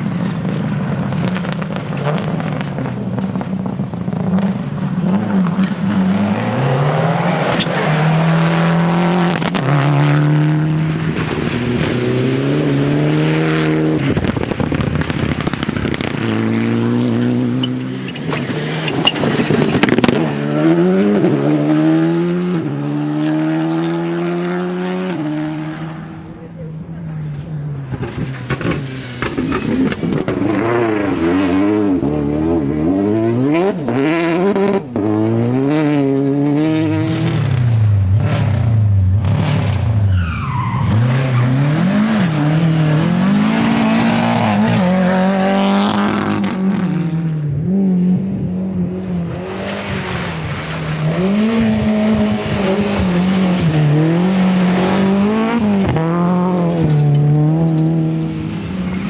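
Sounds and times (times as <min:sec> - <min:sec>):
rally car engine revving: 0:00.0 - 0:59.0.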